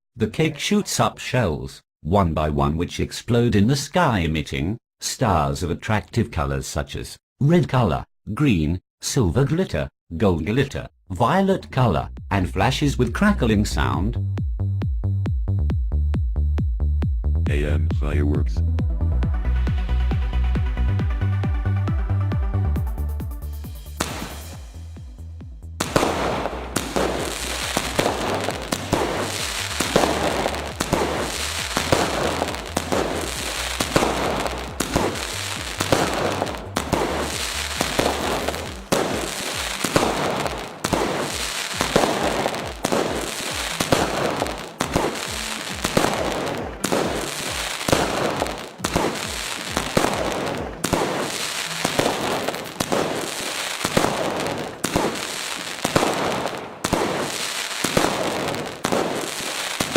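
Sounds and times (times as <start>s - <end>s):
firework crackling: 23.8s - 25.0s, 25.8s - 59.9s
firework shells bursting: 24.0s - 24.6s, 25.8s - 59.9s.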